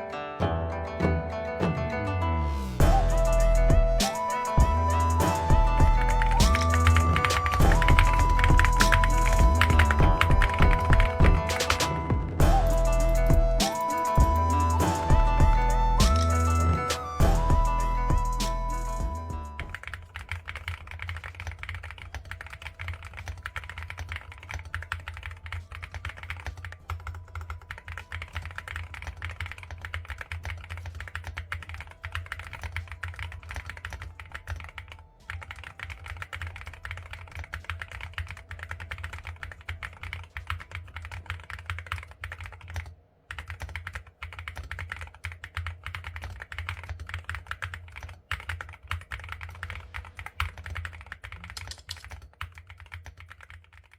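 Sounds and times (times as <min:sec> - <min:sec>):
fast typing on mechanical keyboard: 0:06.0 - 0:11.9, 0:19.6 - 0:53.9.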